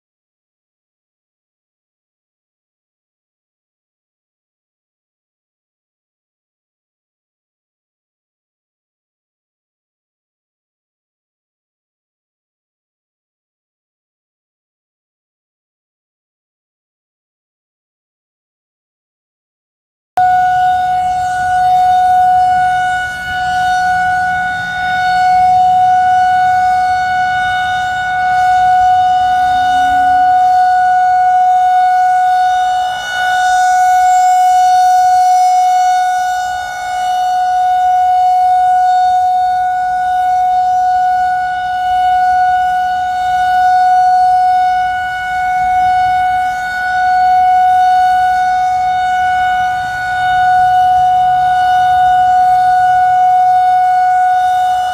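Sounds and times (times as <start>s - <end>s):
rotating warning siren: 20.2s - 54.9s.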